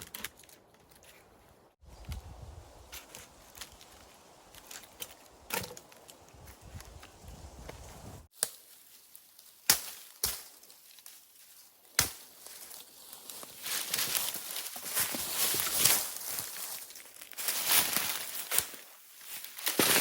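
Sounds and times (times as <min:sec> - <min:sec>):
sharp chopping strikes: 0:12.0 - 0:12.3.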